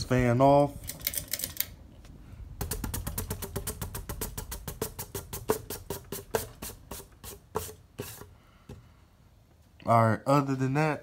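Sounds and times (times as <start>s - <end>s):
ceiling fan clicking: 0.0s - 7.2s.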